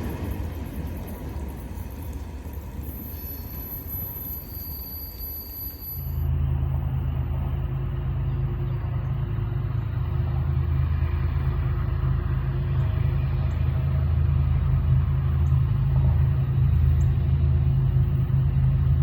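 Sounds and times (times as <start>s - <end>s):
train rumbling past: 0.0s - 19.0s.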